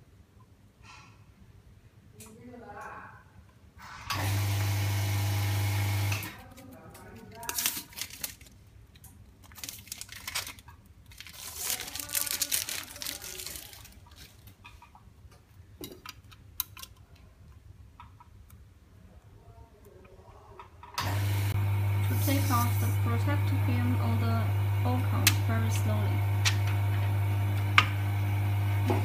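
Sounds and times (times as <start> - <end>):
plastic film crinkling and tearing: 6.3 - 14.6
loud electrical buzz: 21.0 - 29.0.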